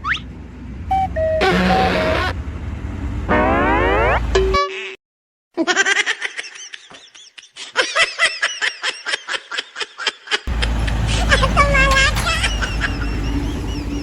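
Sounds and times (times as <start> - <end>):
brief tone: 0.9 - 2.3
high-pitched giggling: 9.7 - 14.0.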